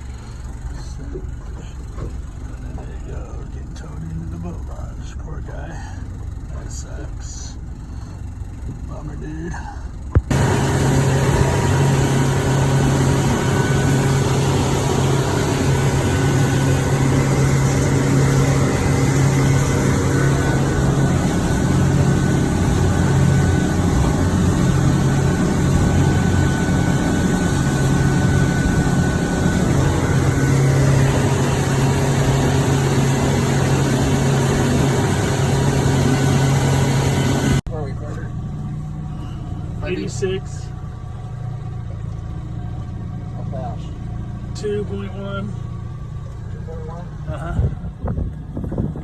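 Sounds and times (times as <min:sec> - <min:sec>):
boat engine droning: 0:00.0 - 0:49.0
steady rushing noise: 0:10.2 - 0:37.6.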